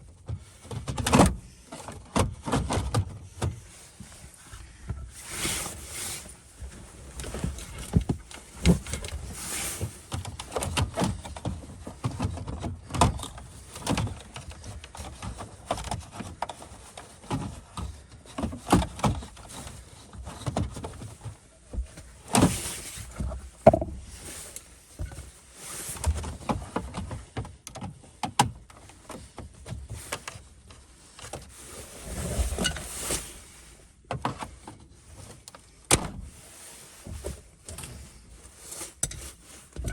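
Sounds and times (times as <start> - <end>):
tools knocking and scraping plastic: 0.2 - 3.6, 6.6 - 25.3, 38.8 - 39.9.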